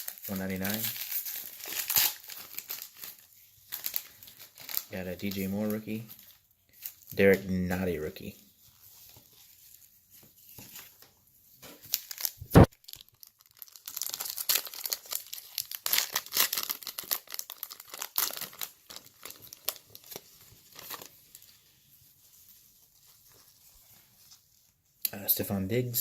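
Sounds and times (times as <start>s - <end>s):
foil wrapper tearing and crinkling: 0.0s - 7.2s, 11.8s - 21.5s.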